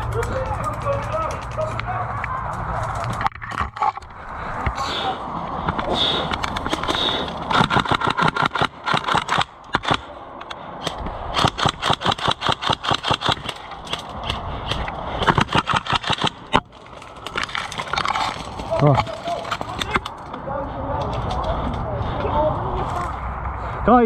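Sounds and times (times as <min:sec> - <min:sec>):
airsoft guns firing bursts: 0:06.7 - 0:10.1, 0:10.8 - 0:14.4, 0:15.2 - 0:16.6.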